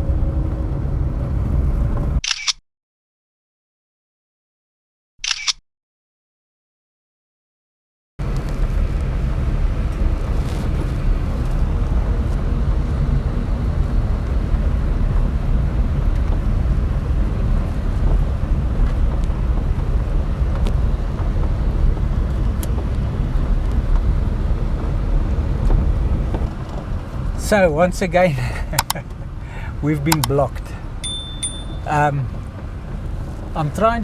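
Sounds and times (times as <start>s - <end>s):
car rumbling on gravel: 0.0s - 2.2s, 8.2s - 34.0s
sharp ticks: 30.1s - 30.4s.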